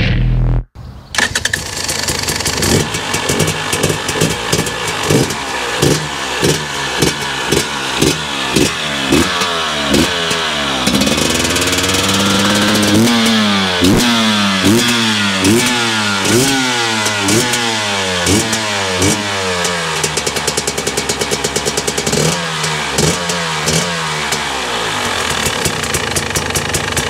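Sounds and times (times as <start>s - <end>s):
steady tone: 0.0s - 0.7s
engine running with cycling pitch: 1.2s - 27.0s.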